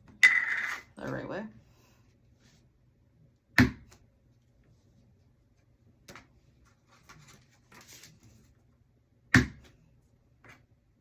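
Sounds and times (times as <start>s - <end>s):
paper rustling: 6.1s - 8.6s.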